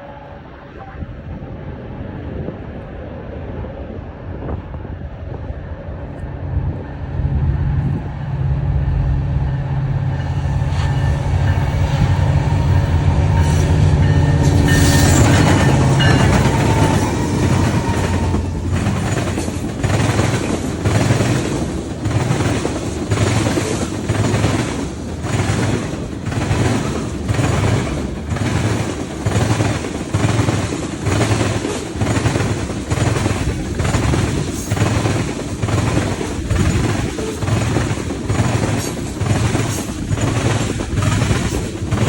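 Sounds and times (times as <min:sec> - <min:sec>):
train cars rushing past: 0:00.0 - 0:42.0
train engine drone: 0:00.0 - 0:42.0
sharp rail clicks: 0:10.7 - 0:42.0.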